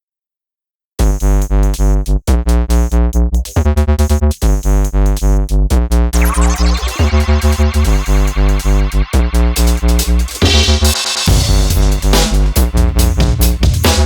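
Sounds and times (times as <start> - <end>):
electronic music with drum machine: 4.4 - 14.0.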